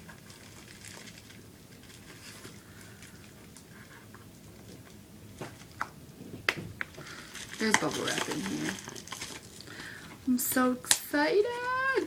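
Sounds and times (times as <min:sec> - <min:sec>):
package rustling and clicking: 0:04.6 - 0:09.7.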